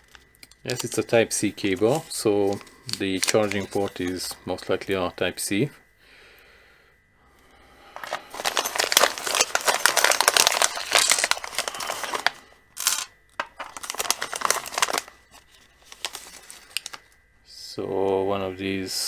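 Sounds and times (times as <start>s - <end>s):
plastic packaging crinkling: 1.6s - 4.3s, 8.0s - 17.2s.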